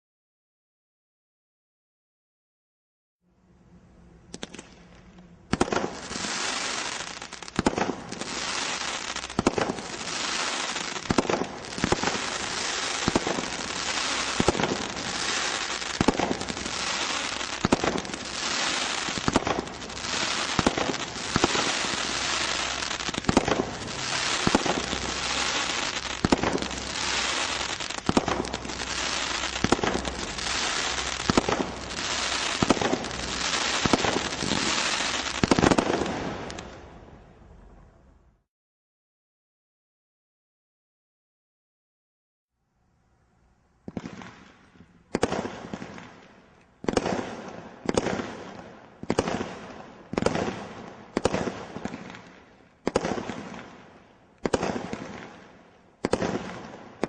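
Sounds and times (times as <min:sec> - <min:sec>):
dense crackling of bursting effects: 0:04.3 - 0:36.9
firework reports: 0:05.5 - 0:36.9.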